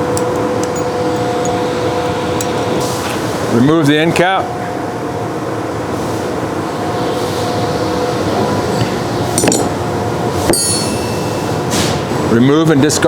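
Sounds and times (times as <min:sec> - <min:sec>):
steady hum: 0:00.0 - 0:12.3
sharp metallic clinks: 0:00.1 - 0:02.7, 0:10.5 - 0:11.5.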